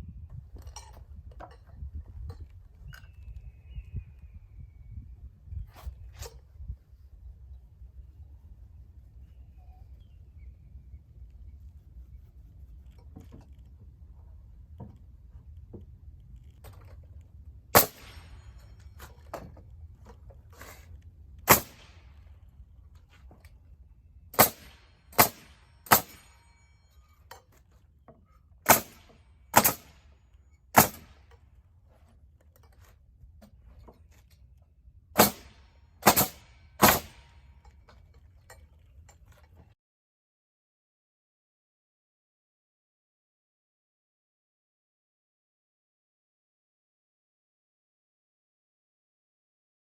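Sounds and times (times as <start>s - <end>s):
nails driven into wood: 17.8s - 18.5s, 24.4s - 26.5s, 28.6s - 30.1s, 30.7s - 31.4s, 35.2s - 37.5s.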